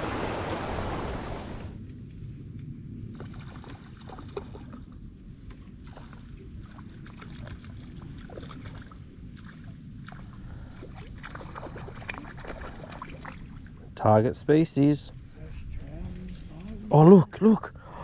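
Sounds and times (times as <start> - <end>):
steady low rumble: 0.0 - 18.0
water lapping against boat hull: 3.1 - 14.0
light splashes and knocks: 3.2 - 13.6.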